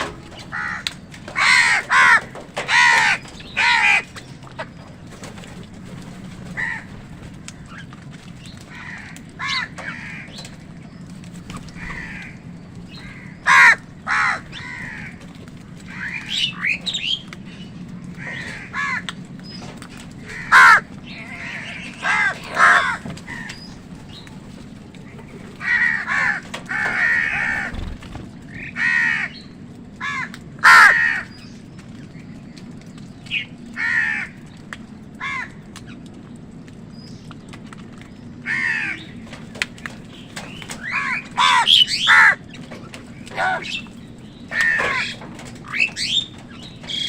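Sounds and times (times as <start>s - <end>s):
crows cawing: 0.0s - 4.8s, 6.4s - 8.0s, 8.6s - 10.8s, 11.6s - 16.8s, 18.1s - 19.3s, 20.1s - 23.9s, 25.0s - 31.5s, 33.7s - 35.9s, 38.4s - 39.5s, 40.4s - 47.0s
steady low hum: 0.0s - 47.0s.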